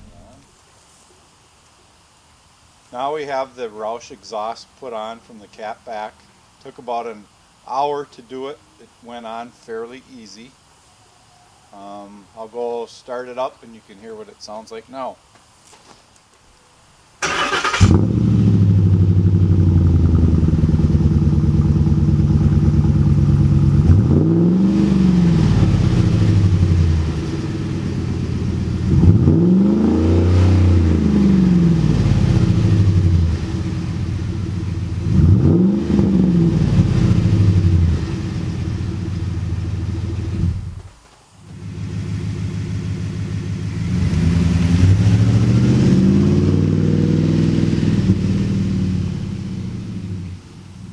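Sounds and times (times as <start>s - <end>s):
car engine idling and revving: 17.7s - 40.8s, 41.5s - 50.9s.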